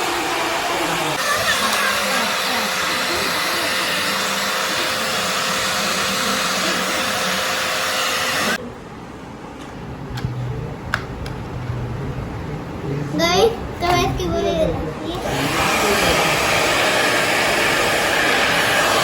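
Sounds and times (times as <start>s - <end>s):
hair dryer blowing with whine: 0.0s - 8.6s, 15.1s - 19.0s.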